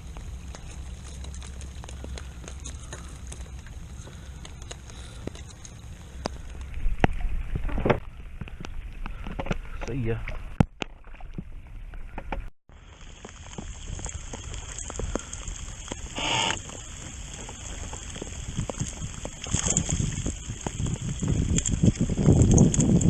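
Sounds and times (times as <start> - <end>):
rain hissing: 0.0 - 7.0, 12.7 - 22.6
water sloshing: 0.0 - 22.6
ticks and knocks against hull: 0.1 - 12.5.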